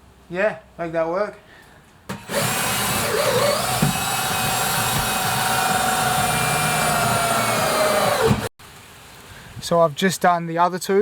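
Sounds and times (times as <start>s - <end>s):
power tool motor whining: 2.1s - 8.5s.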